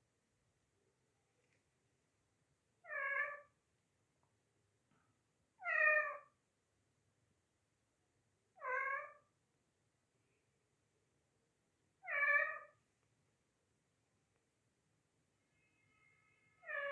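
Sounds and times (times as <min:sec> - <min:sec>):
parrot mimicking kitten meow: 0:05.6 - 0:06.3, 0:08.6 - 0:09.2, 0:12.0 - 0:12.8.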